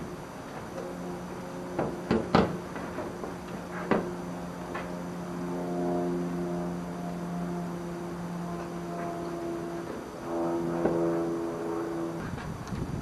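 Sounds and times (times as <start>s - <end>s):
steady low hum: 0.0s - 13.0s
sharp knocks and clunks: 1.8s - 4.1s.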